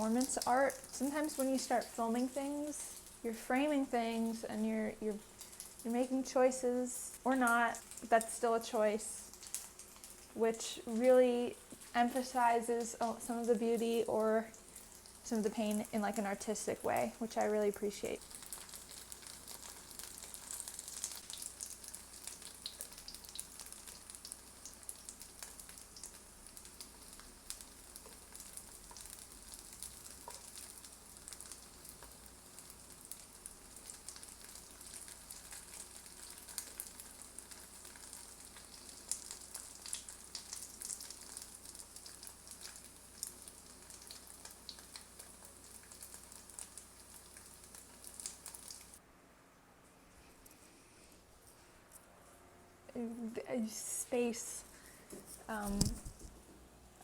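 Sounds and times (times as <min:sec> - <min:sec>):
tofu sizzling in oil: 0:00.0 - 0:04.0, 0:05.1 - 0:49.0
oil crackling pops: 0:09.3 - 0:10.4, 0:18.2 - 0:49.0.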